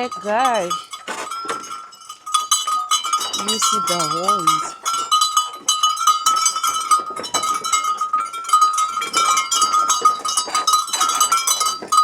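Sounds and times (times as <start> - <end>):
goat bells ringing: 0.0 - 12.0
goats moving and feeding: 0.0 - 12.0.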